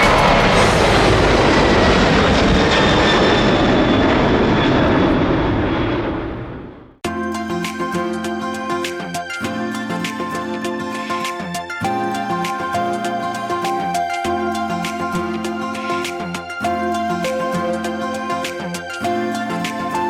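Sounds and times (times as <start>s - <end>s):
aircraft engines passing: 0.0s - 7.0s
background music: 7.0s - 20.0s.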